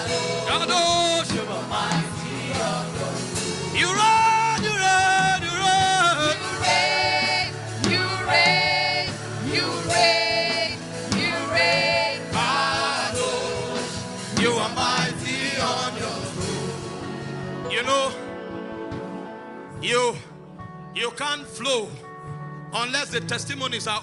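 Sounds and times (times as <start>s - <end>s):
person singing gospel: 0.0s - 18.3s.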